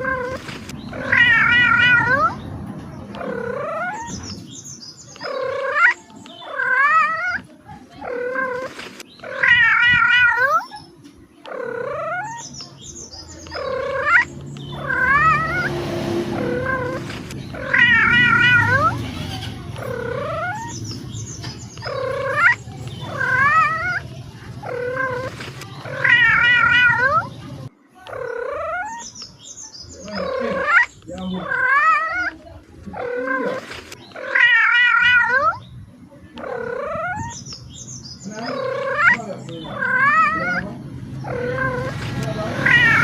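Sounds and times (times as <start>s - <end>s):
cat meowing: 0.0s - 2.4s, 3.2s - 4.3s, 5.2s - 10.8s, 11.4s - 12.6s, 13.5s - 15.7s, 16.4s - 20.8s, 21.8s - 24.0s, 24.6s - 27.3s, 28.0s - 29.1s, 30.0s - 35.6s, 36.4s - 37.4s, 38.4s - 43.0s.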